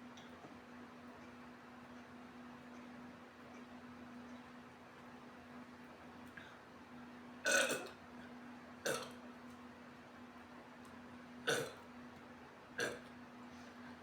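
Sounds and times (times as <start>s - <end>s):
woman burping: 7.5s - 7.9s, 8.8s - 9.1s, 11.5s - 11.8s, 12.8s - 13.1s.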